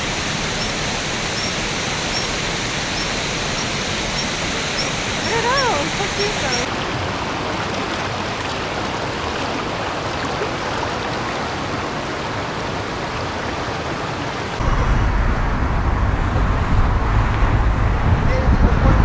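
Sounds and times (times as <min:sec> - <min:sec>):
rushing falling water: 0:00.0 - 0:14.7
low rumble: 0:14.6 - 0:19.0.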